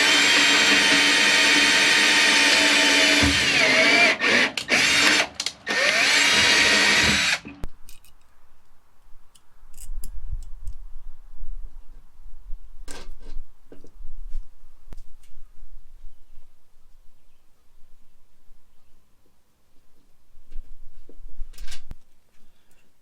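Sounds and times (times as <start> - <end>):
power drill motor running: 0.0 - 7.6.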